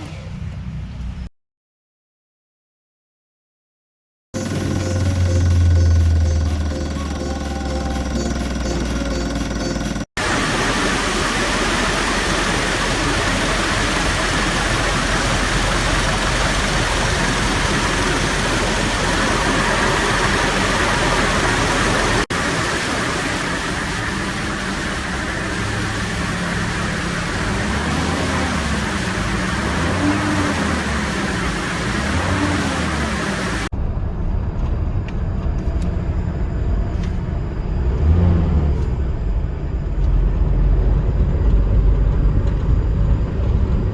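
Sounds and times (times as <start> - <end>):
diesel engine running: 4.4 - 43.9.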